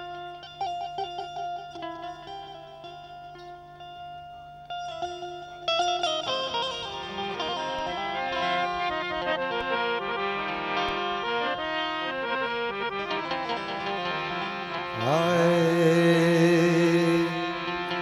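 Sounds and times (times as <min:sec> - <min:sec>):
harmonium folk melody: 0:00.0 - 0:18.0
person singing: 0:14.9 - 0:18.0.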